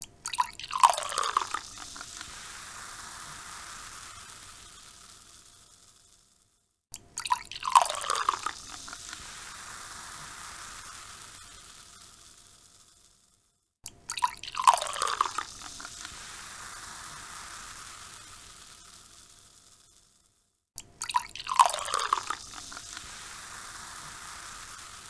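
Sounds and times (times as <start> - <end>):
soda pouring and splashing: 0.2 - 5.8, 7.2 - 12.8, 14.1 - 19.7, 21.0 - 25.0
carbonation fizzing: 0.3 - 5.3, 7.2 - 12.2, 14.1 - 19.3, 21.0 - 25.0.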